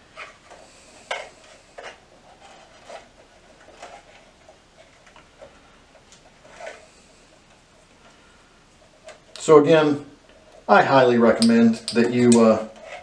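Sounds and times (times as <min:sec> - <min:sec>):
wires clicking and scraping: 0:00.1 - 0:13.0.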